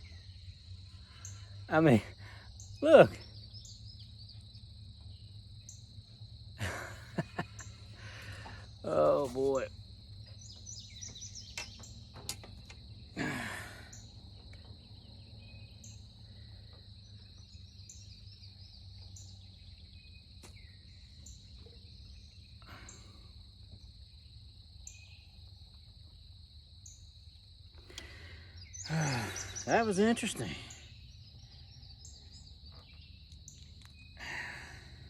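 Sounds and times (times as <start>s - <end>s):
bird chirps: 0.0s - 23.4s, 24.8s - 25.9s, 26.8s - 34.2s
high insect trill: 0.0s - 35.0s
fast pulsing insect sound: 26.8s - 35.0s.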